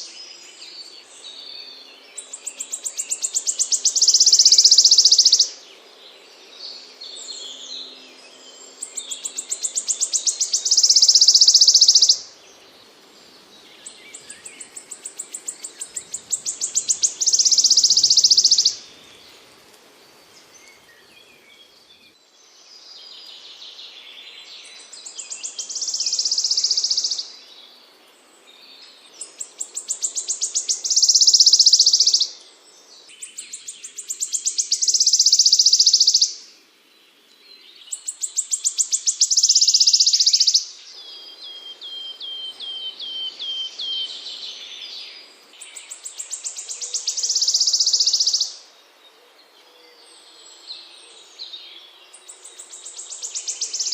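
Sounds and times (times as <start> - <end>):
songbird trilling: 2.2 - 5.6, 8.7 - 12.3, 13.8 - 18.9, 25.0 - 27.4, 29.2 - 32.4, 33.2 - 36.5, 37.8 - 45.0, 45.6 - 48.6, 52.1 - 53.9.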